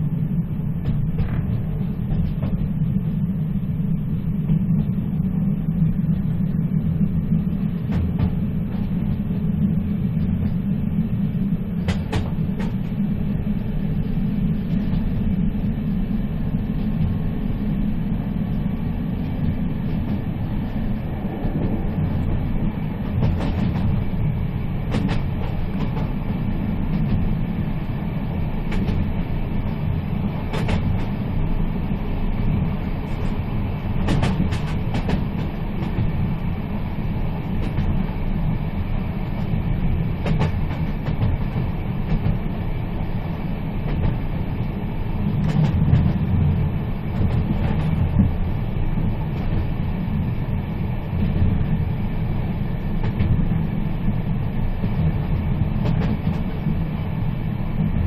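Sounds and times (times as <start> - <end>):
train rumbling: 0.0 - 58.0
wheels clicking on track: 19.8 - 49.8.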